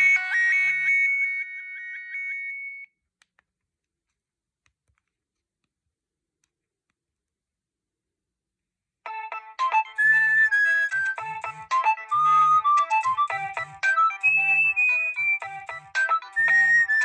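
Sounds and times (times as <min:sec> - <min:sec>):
mobile phone ringtone melody: 0:00.0 - 0:02.9, 0:09.1 - 0:17.0.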